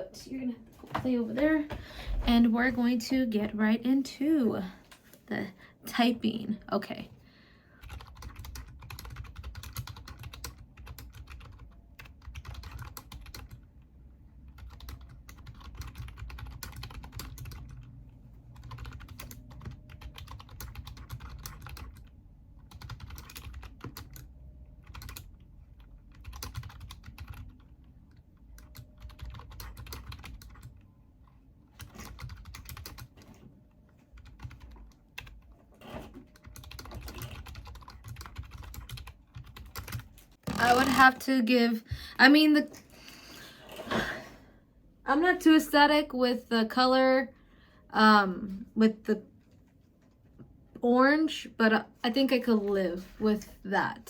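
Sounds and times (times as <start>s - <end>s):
keyboard typing: 7.8s - 13.7s, 14.5s - 30.8s, 31.8s - 33.4s, 34.1s - 41.1s.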